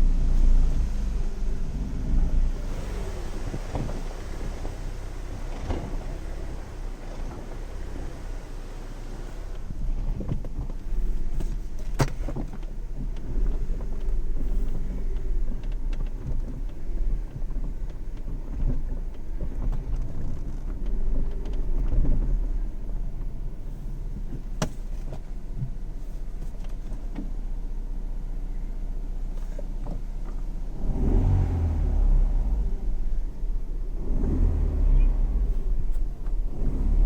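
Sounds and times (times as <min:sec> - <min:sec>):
car engine low rumble: 0:00.0 - 0:37.0.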